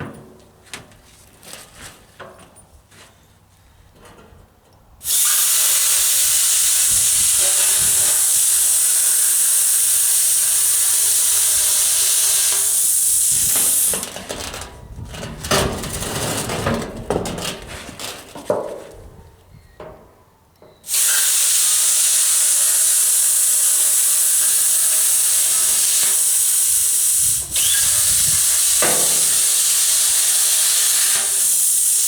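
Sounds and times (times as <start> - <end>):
loud steady hiss: 5.0 - 14.4, 20.8 - 32.0.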